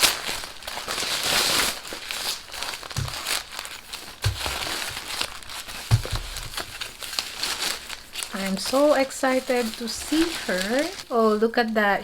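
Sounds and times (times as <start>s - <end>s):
wrapping crinkling: 0.0s - 12.0s
dull handling bumps: 2.9s - 3.4s, 5.8s - 6.7s.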